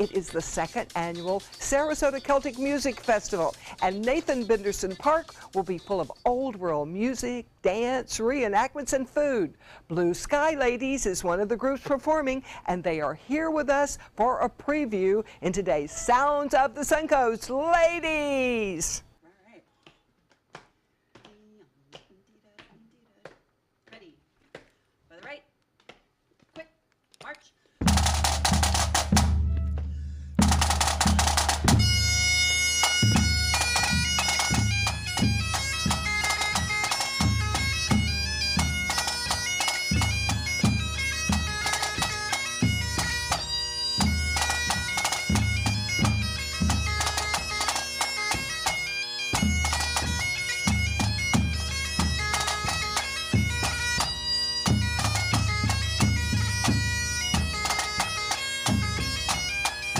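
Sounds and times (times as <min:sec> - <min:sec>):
bagpipes playing: 0:00.0 - 0:06.2, 0:28.0 - 0:59.9
snare drum roll: 0:27.8 - 0:31.8
bass drum beating: 0:27.8 - 0:32.2.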